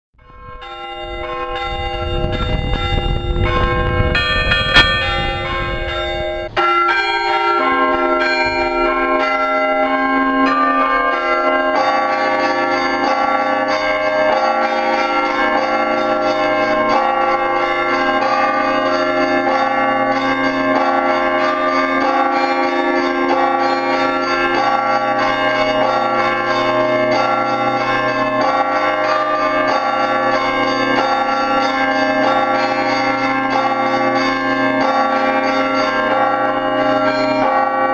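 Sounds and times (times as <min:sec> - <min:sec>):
church bells pealing: 0:00.2 - 0:37.9
low rumble: 0:01.3 - 0:06.8.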